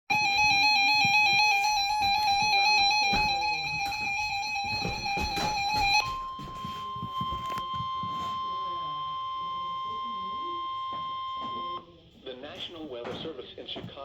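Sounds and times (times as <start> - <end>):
steady alarm tone: 0.0 - 12.9.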